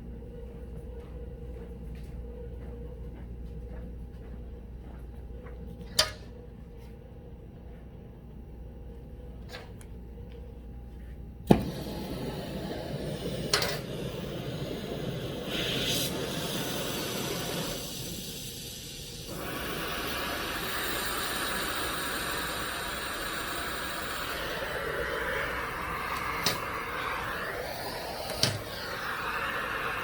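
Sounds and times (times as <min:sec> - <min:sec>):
gas torch lighting pop: 0:11.5 - 0:30.0
hissing torch flame: 0:11.5 - 0:30.0.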